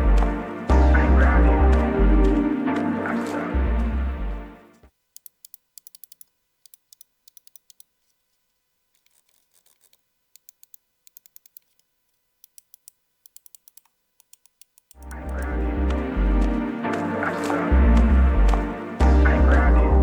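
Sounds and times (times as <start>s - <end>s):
mouse buttons clicking: 5.2s - 7.9s, 9.8s - 16.6s.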